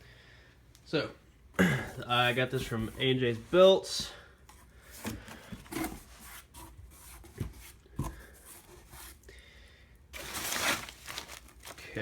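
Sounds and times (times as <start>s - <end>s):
cardboard flaps scraping: 10.2s - 12.0s.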